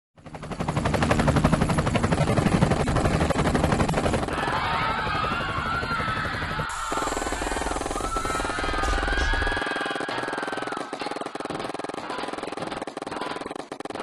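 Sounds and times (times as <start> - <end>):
wavering whistle-like tones: 6.7 - 11.2
rhythmic chopping clatter: 6.7 - 14.0.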